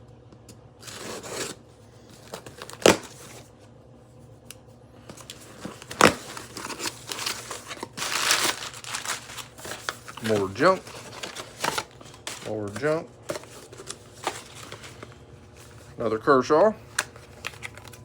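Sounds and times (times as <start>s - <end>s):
cardboard box being opened: 0.8s - 1.6s, 5.1s - 15.7s
packing material rustling: 0.8s - 1.6s, 2.2s - 3.4s, 5.1s - 16.0s, 16.8s - 18.0s.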